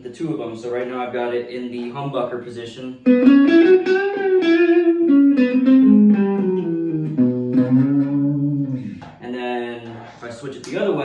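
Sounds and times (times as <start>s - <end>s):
electric guitar melodic run: 3.0s - 9.0s.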